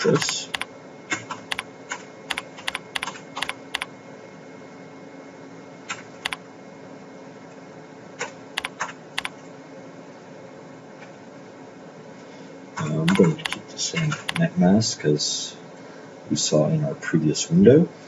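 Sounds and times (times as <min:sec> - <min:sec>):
faint steady hum: 0:00.0 - 0:18.0
keyboard typing: 0:00.1 - 0:03.9, 0:08.6 - 0:09.3, 0:13.1 - 0:14.5.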